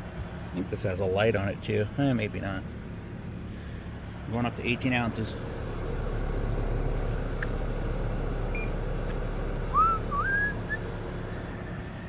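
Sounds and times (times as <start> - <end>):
air conditioning hum: 0.0 - 12.0
rising whistle: 9.7 - 10.9.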